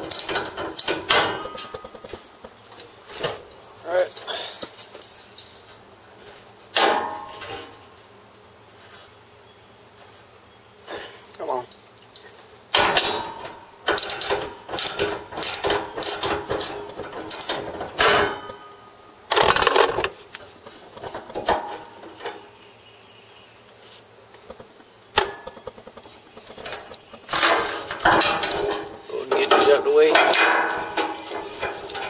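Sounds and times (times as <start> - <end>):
ratchet clicking and rattling: 0.0 - 2.0, 13.9 - 18.5
metal on metal clatter: 0.0 - 2.2, 12.7 - 20.2, 21.0 - 22.5, 25.2 - 32.0.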